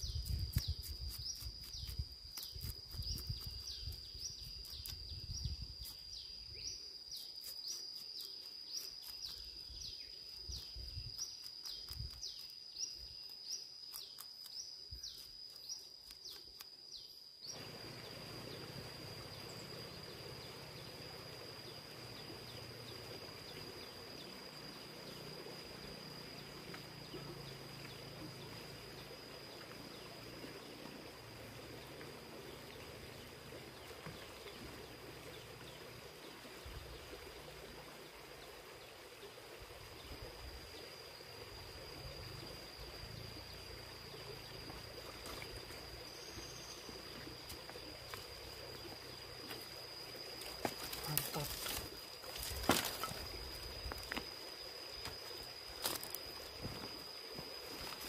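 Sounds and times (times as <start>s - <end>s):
high-pitched insect drone: 40.0s - 58.0s.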